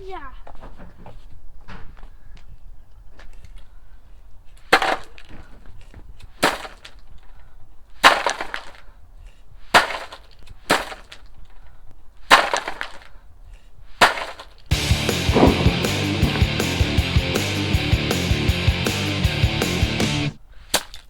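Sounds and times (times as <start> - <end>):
broom whacking gingerbread house: 6.3 - 7.0, 8.0 - 8.8, 9.7 - 11.2, 12.2 - 13.0, 14.0 - 21.0.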